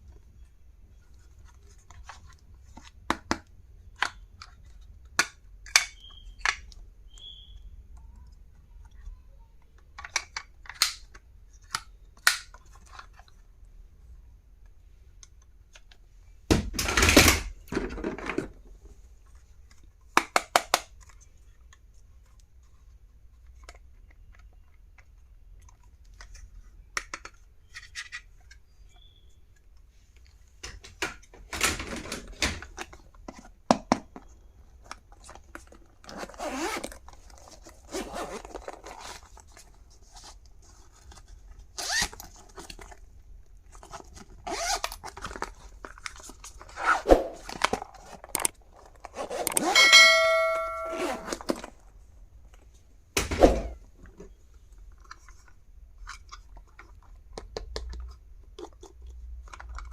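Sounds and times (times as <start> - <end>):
packaging rustling and scraping: 34.2 - 49.8, 51.0 - 52.7.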